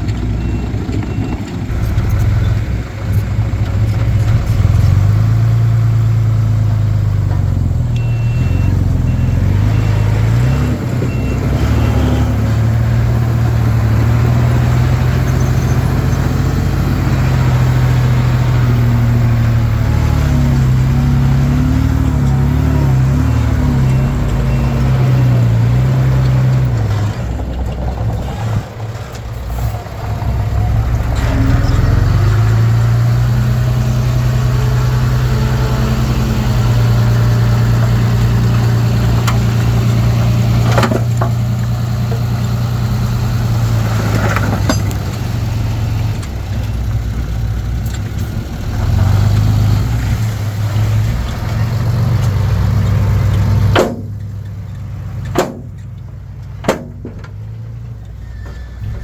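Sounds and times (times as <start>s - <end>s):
bulldozer diesel engine running: 0.0s - 59.0s
sharp knocks: 53.7s - 54.2s, 55.3s - 55.8s, 56.6s - 57.4s.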